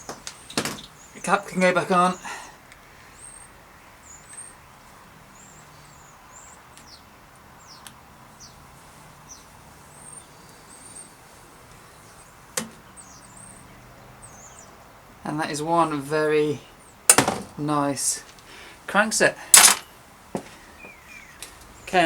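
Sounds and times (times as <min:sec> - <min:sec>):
small birds chirping: 0:00.0 - 0:22.0
background hiss: 0:15.2 - 0:22.0.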